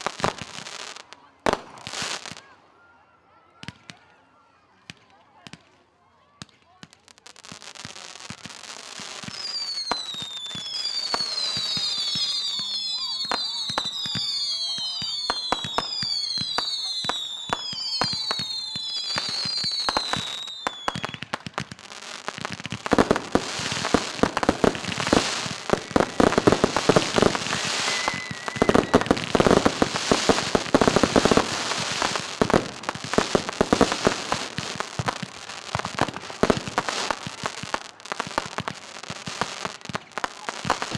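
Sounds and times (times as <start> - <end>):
fireworks crackling and banging: 0.0 - 2.6, 4.8 - 40.9
firework whistles falling in pitch: 9.2 - 21.4, 24.7 - 35.1.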